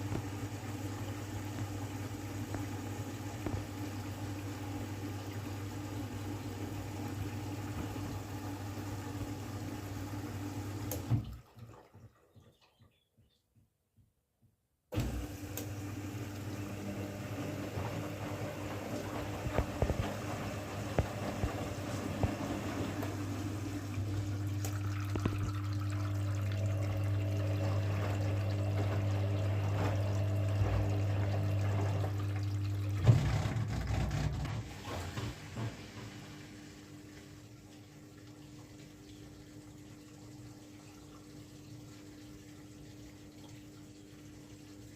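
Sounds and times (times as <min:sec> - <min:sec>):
washing machine humming: 0:00.0 - 0:13.4, 0:14.9 - 0:44.9.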